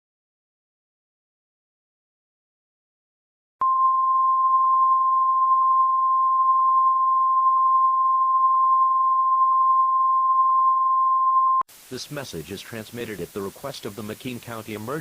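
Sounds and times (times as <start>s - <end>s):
loud steady beep: 3.6s - 11.6s.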